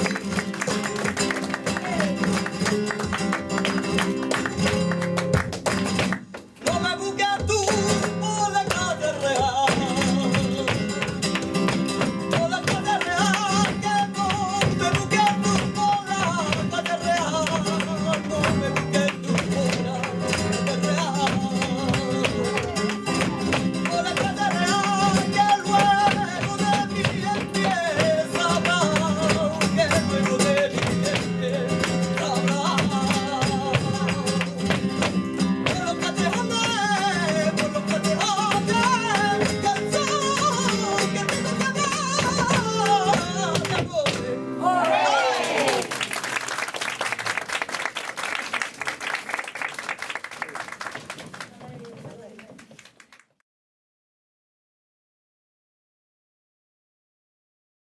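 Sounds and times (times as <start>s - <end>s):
flamenco guitar strumming: 0.0s - 45.8s.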